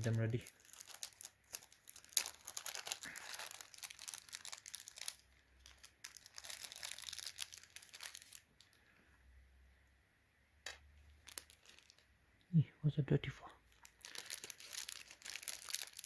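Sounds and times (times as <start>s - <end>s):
plastic bag crinkling: 0.0s - 8.8s, 10.7s - 12.1s, 13.7s - 16.0s.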